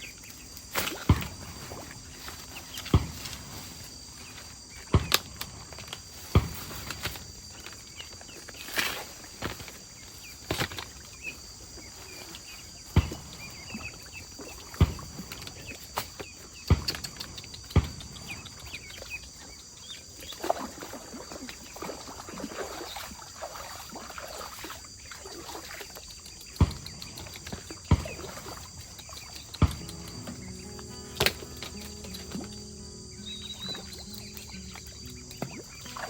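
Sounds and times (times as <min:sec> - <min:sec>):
faint chirps: 0:09.9 - 0:23.6, 0:24.3 - 0:36.0
sharp knocks: 0:26.6 - 0:28.4, 0:29.6 - 0:36.0
high-pitched drone: 0:29.8 - 0:36.0.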